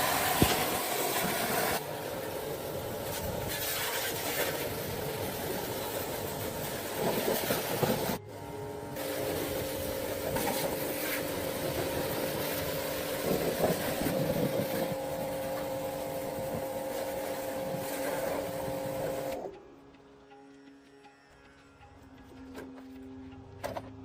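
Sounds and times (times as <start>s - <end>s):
hissing noise: 0.0s - 19.5s.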